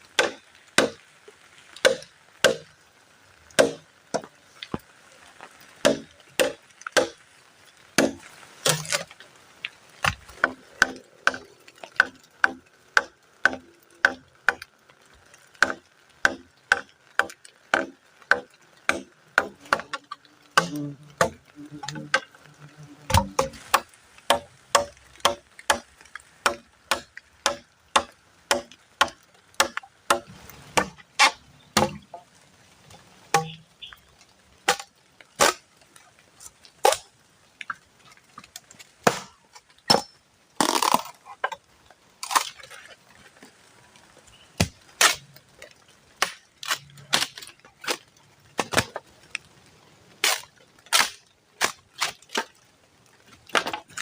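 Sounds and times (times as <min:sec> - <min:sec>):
wood being chopped: 0:00.2 - 0:01.0, 0:01.8 - 0:02.7, 0:03.6 - 0:04.8, 0:05.8 - 0:07.2, 0:08.0 - 0:09.1, 0:10.0 - 0:14.7, 0:15.6 - 0:20.0, 0:20.6 - 0:22.3, 0:23.1 - 0:32.2, 0:33.3 - 0:34.0, 0:34.6 - 0:35.6, 0:36.8 - 0:37.8, 0:38.4 - 0:41.6, 0:44.6 - 0:45.2, 0:46.2 - 0:48.0, 0:48.6 - 0:49.0, 0:50.2 - 0:52.5, 0:53.5 - 0:54.0.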